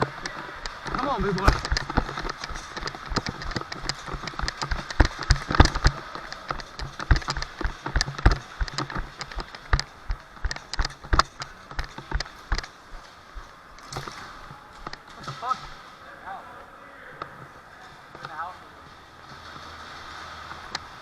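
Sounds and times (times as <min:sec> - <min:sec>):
sharp irregular knocks and taps: 0:00.0 - 0:14.1.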